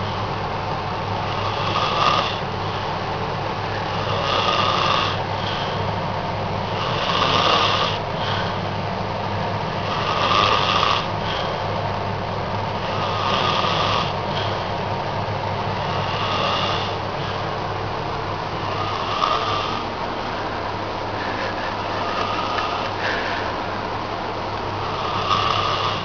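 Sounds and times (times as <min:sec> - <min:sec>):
steady low hum: 0:00.0 - 0:26.0
man snoring: 0:01.2 - 0:02.9, 0:03.7 - 0:05.8, 0:06.6 - 0:08.6, 0:09.8 - 0:11.6, 0:12.8 - 0:14.8, 0:15.6 - 0:17.5, 0:18.5 - 0:20.0, 0:21.1 - 0:23.6, 0:24.8 - 0:26.0.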